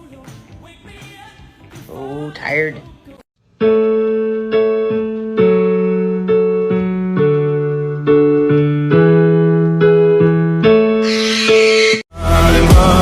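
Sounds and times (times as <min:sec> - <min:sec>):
slow keyboard chords: 0:03.4 - 0:11.0.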